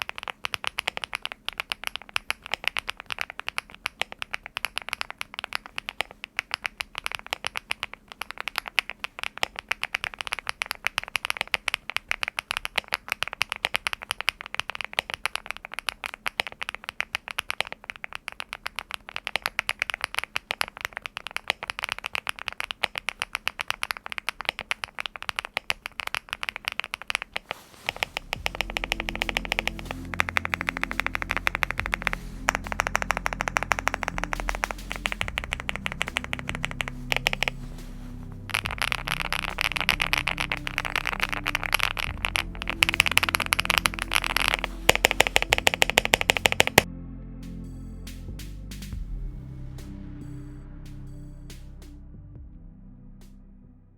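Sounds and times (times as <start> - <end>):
fast keyboard typing: 0.0 - 37.8, 38.4 - 46.9
background music: 27.6 - 53.9.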